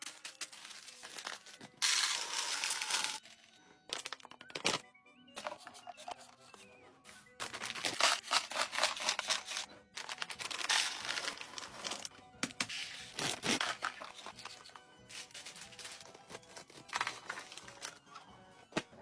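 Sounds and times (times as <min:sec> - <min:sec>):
plastic crinkling: 0:00.0 - 0:03.3
background music: 0:00.0 - 0:19.0.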